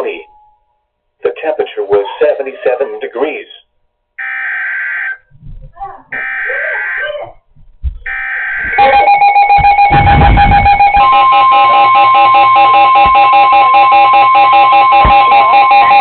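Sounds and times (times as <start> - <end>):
loud pulsing alert tone: 8.1 - 16.0.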